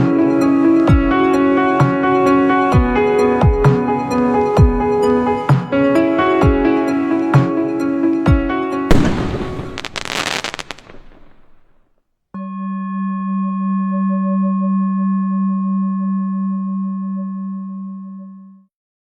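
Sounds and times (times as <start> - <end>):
crackling burst: 8.9 - 11.8.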